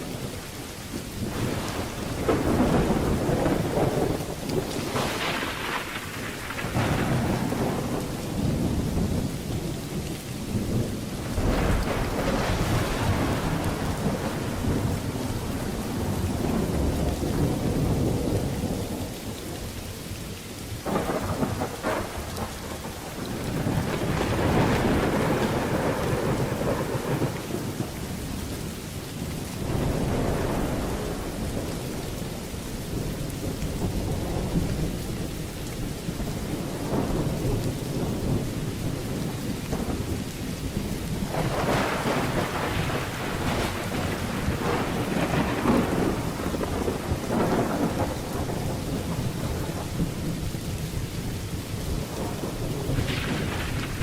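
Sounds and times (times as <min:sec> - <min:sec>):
heavy rain: 0:00.0 - 0:54.0
rolling thunder: 0:01.2 - 0:19.8, 0:20.8 - 0:54.0.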